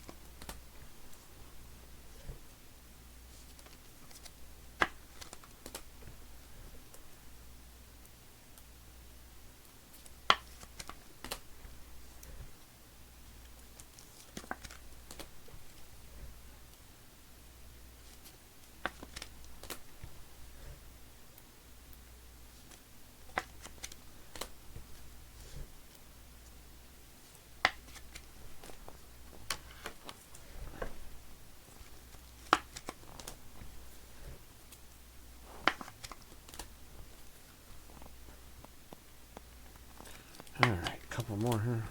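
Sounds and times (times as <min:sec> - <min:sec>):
cards and plastic cases clicking: 0:00.0 - 0:00.6, 0:10.3 - 0:11.4, 0:13.8 - 0:15.3, 0:18.1 - 0:19.9, 0:22.7 - 0:25.0, 0:27.6 - 0:31.0, 0:31.8 - 0:33.4, 0:35.6 - 0:37.3, 0:37.9 - 0:41.8
cards clicking and tapping on table: 0:32.4 - 0:33.4, 0:35.6 - 0:36.7.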